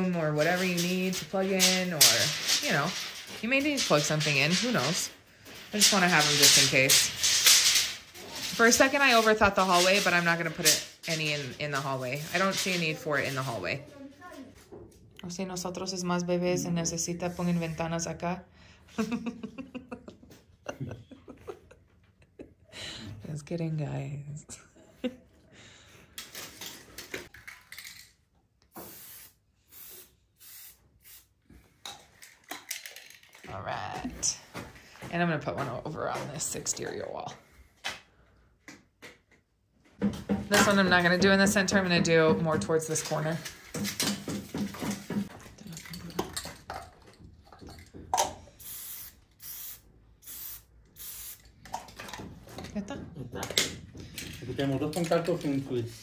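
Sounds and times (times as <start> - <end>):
spray paint can hissing: 28.7 - 31.4, 48.6 - 51.5.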